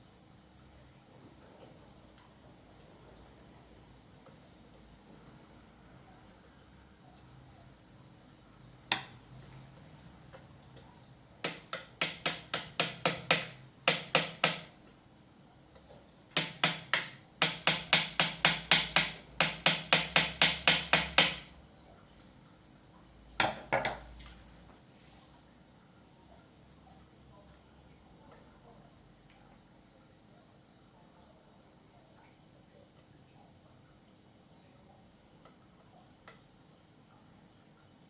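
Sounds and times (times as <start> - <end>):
hammer tapping: 8.9 - 9.2, 11.4 - 14.7, 16.4 - 21.5.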